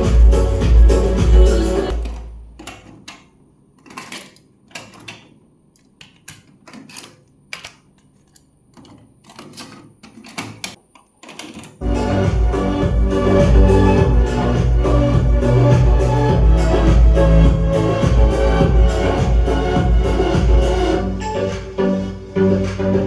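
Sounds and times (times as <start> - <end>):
music: 0.0 - 1.9, 11.8 - 23.0.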